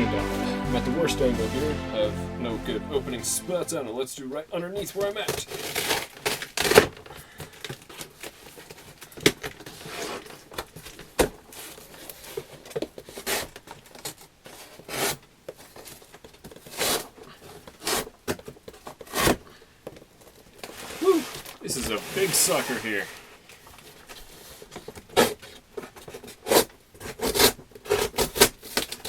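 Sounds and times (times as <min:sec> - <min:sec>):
cardboard box ripping: 0:05.4 - 0:07.0
cardboard rustling: 0:20.0 - 0:29.0.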